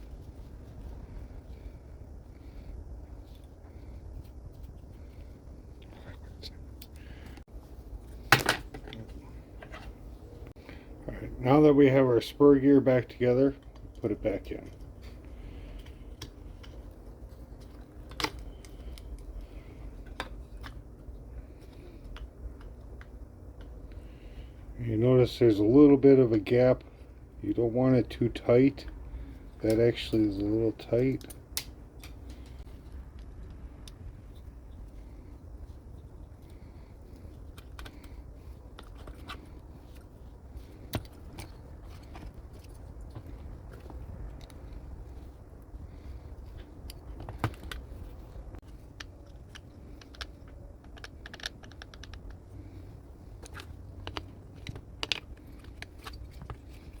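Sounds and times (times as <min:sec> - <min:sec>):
low steady hum: 0:00.0 - 0:57.0
clicks of small plastic parts: 0:48.6 - 0:52.4.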